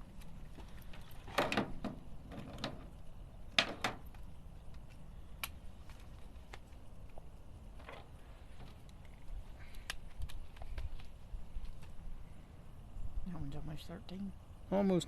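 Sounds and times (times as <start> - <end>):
clunks and clatters of handling fish: 0.5 - 2.9.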